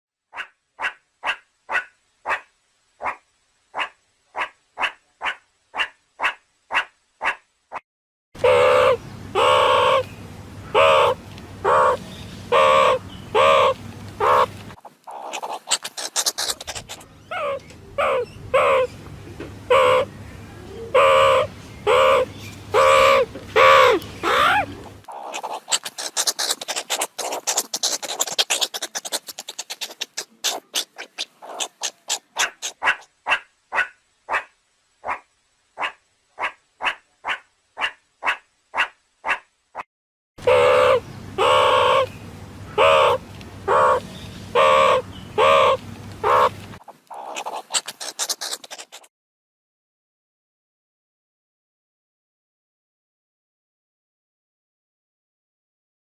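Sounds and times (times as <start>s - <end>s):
meerkat barking calls: 0.3s - 7.4s, 8.4s - 10.1s, 10.7s - 14.5s, 15.1s - 18.9s, 19.7s - 20.1s, 20.9s - 39.5s, 40.4s - 42.1s, 42.7s - 49.1s
meerkat twittering chatter: 8.4s - 10.1s, 10.7s - 18.9s, 19.7s - 20.1s, 20.9s - 34.5s, 40.4s - 42.2s, 42.8s - 49.1s
meerkat sharp chirps: 10.7s - 14.5s, 15.1s - 18.9s, 22.8s - 34.5s, 42.8s - 44.0s, 44.6s - 49.1s.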